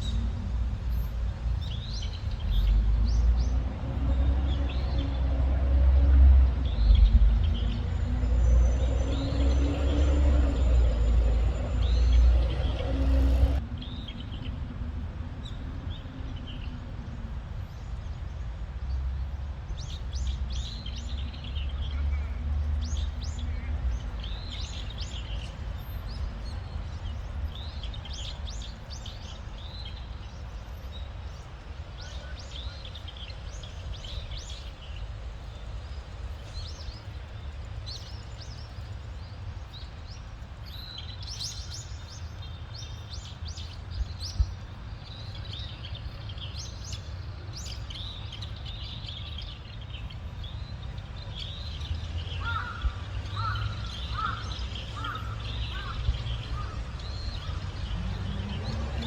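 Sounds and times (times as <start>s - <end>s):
steady low rumble: 0.0s - 59.0s
small birds chirping: 19.2s - 59.0s.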